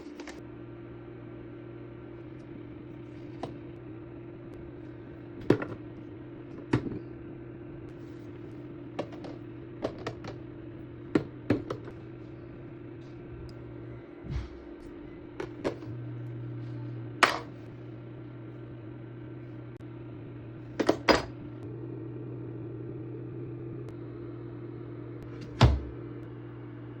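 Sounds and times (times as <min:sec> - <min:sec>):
fridge humming: 0:00.0 - 0:27.0
bottles and jars knocking: 0:09.0 - 0:10.4.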